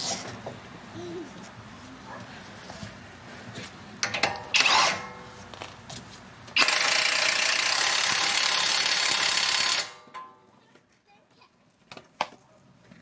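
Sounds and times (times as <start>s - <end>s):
impact wrench running: 4.0s - 5.2s, 6.6s - 10.2s.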